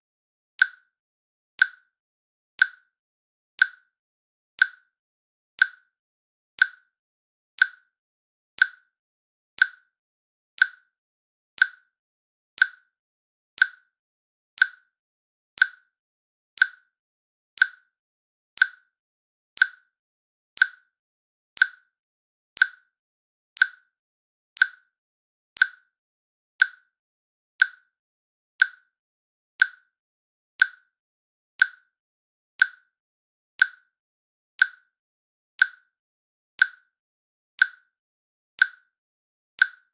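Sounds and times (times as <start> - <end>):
timer ticking clicks: 0.6 - 1.0, 1.6 - 2.0, 2.6 - 3.0, 3.6 - 4.0, 4.6 - 5.0, 5.6 - 6.0, 6.6 - 7.0, 7.6 - 8.0, 8.6 - 9.0, 9.6 - 10.0, 10.6 - 11.0, 11.6 - 12.0, 12.6 - 13.0, 13.6 - 14.0, 14.6 - 15.0, 15.6 - 16.0, 16.6 - 17.0, 17.6 - 18.0, 18.6 - 19.0, 19.6 - 20.0, 20.6 - 21.0, 21.6 - 22.0, 22.6 - 23.0, 23.6 - 24.0, 24.6 - 25.0, 25.6 - 26.0, 26.6 - 27.0, 27.6 - 28.0, 28.6 - 29.0, 29.6 - 30.0, 30.6 - 31.0, 31.6 - 32.0, 32.6 - 33.0, 33.6 - 34.0, 34.6 - 35.0, 35.6 - 36.0, 36.6 - 37.0, 37.6 - 38.0, 38.6 - 39.0, 39.6 - 39.9.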